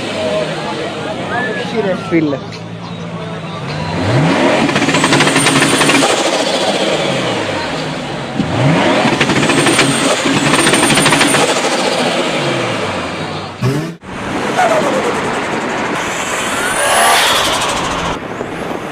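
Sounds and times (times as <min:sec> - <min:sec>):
car engine revving: 0:03.7 - 0:18.9
turbo flutter chattering: 0:14.8 - 0:18.2.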